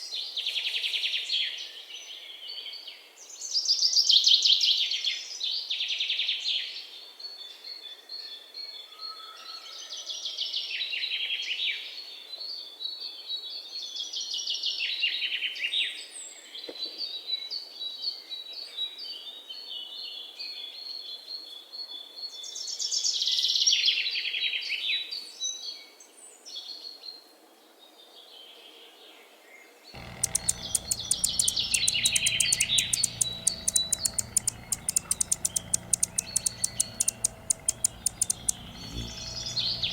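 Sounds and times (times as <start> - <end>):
bird trills: 30.0 - 39.9
fast regular clicking: 30.0 - 39.9.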